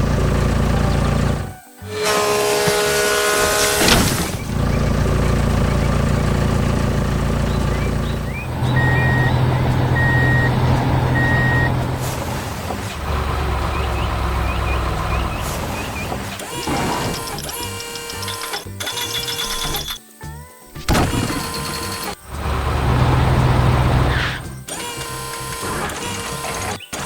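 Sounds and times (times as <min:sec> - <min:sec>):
heavy truck engine running: 0:00.0 - 0:18.2, 0:20.8 - 0:25.6
air hiss: 0:01.8 - 0:04.6
reversing alarm beeps: 0:07.7 - 0:12.0.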